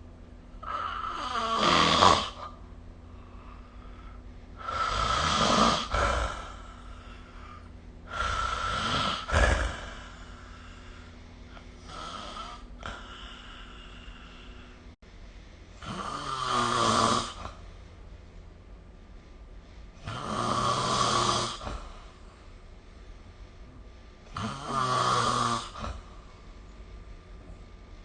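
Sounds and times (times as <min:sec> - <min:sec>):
person snoring: 0:00.6 - 0:02.6, 0:04.6 - 0:14.8, 0:15.8 - 0:17.6, 0:20.0 - 0:22.1, 0:24.3 - 0:26.2.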